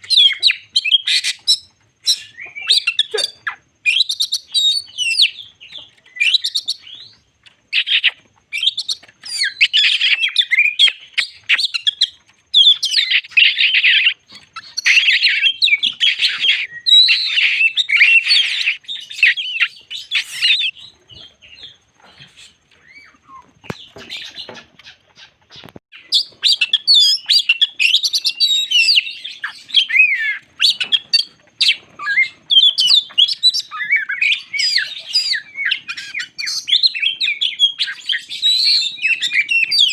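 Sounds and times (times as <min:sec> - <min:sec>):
bird singing whistled phrases: 0:00.0 - 0:21.8, 0:26.0 - 0:39.9.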